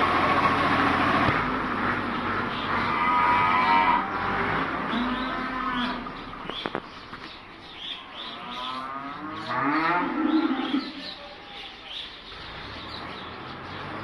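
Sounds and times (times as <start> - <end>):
cows mooing: 2.8 - 6.1, 8.2 - 11.1
small birds chirping: 4.9 - 14.0.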